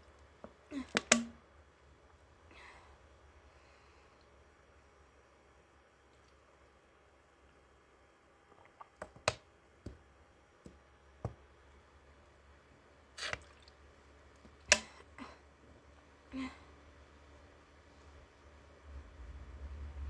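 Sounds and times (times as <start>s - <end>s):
drinking gulps: 8.3s - 9.3s, 13.2s - 13.8s
soda container clicks and taps: 9.0s - 10.0s.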